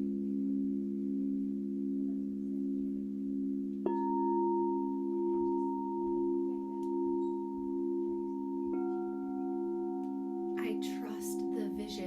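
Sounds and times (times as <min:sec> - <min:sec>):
singing bowls ringing: 0:00.0 - 0:12.0
singing bowl struck: 0:00.1 - 0:12.0.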